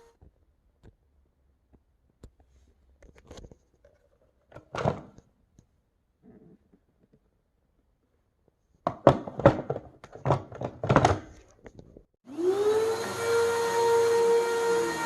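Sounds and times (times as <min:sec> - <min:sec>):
vacuum cleaner whine: 0:12.3 - 0:15.0.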